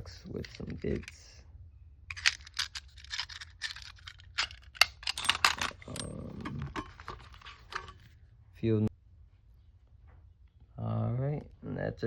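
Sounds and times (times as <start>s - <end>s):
hand tools clicking and rattling: 0.3s - 1.2s, 2.1s - 8.1s
tool scraping: 2.1s - 8.1s.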